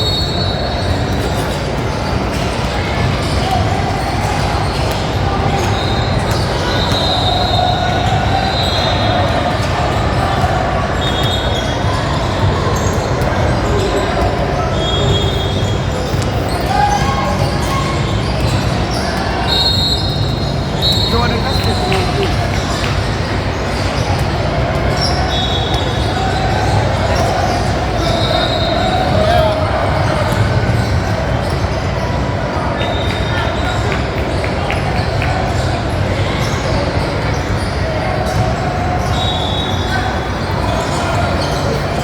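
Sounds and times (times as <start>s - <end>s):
crowd din: 0.0s - 42.0s
sneakers squeaking on court: 0.0s - 42.0s
basketball bouncing on court: 17.4s - 23.6s.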